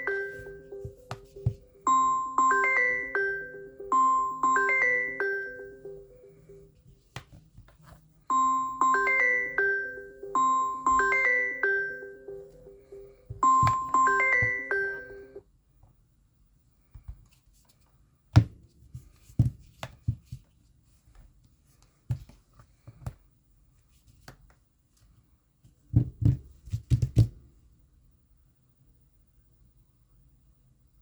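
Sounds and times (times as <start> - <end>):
phone chime ringtone: 0.0 - 6.8, 8.3 - 15.4
taps of phone being handled: 0.8 - 1.7, 13.3 - 14.7.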